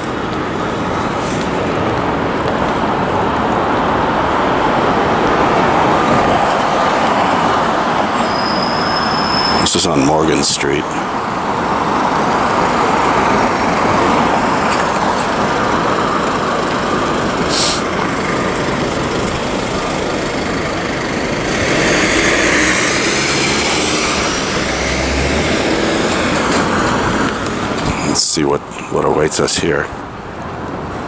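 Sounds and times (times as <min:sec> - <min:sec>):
heavy vehicle running close by: 0:00.0 - 0:28.5
street traffic: 0:00.0 - 0:31.0
brief hiss: 0:17.5 - 0:17.9.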